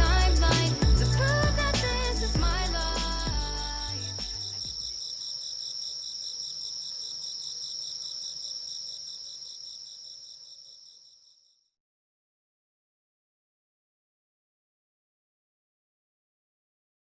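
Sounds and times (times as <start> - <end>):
crickets chirping: 0.0 - 11.7.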